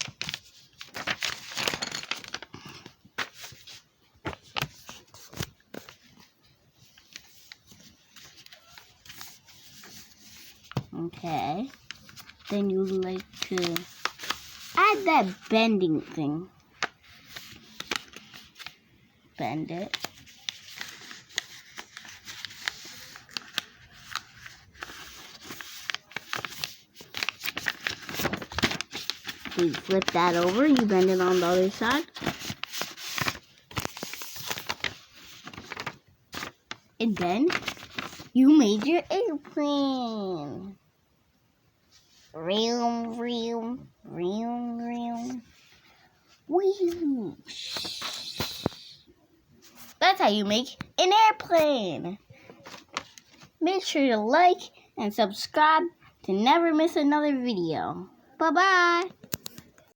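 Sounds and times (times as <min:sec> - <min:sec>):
sharp paper crackles: 0:00.0 - 0:06.3, 0:06.9 - 0:18.8, 0:19.6 - 0:39.6, 0:46.6 - 0:49.0, 0:52.4 - 0:54.0
paper rustling and crinkling: 0:00.0 - 0:18.8, 0:19.6 - 0:39.5, 0:44.7 - 0:48.9, 0:49.6 - 0:50.7, 0:52.3 - 0:54.0.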